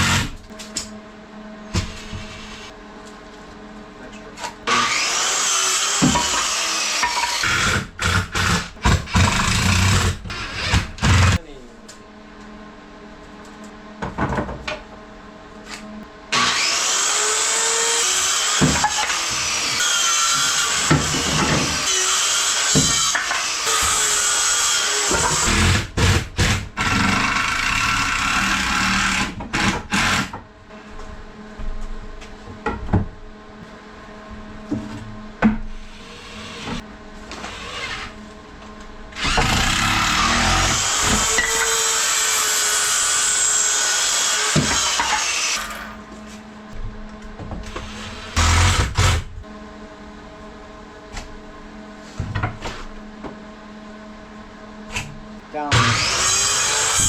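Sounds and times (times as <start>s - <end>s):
power drill driving screws into wood: 4.7s - 11.4s, 16.4s - 30.4s, 39.2s - 45.9s, 47.8s - 49.3s, 55.7s - 57.0s.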